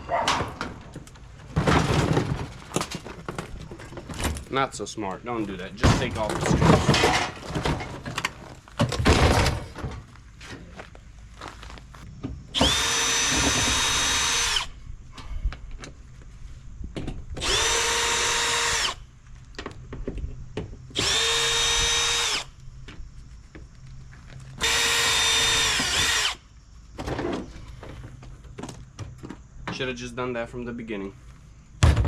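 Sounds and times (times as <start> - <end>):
clatter of metal parts: 5.8 - 10.6
power drill motor whine: 12.5 - 14.8, 17.4 - 19.0, 21.0 - 22.6, 24.6 - 26.4.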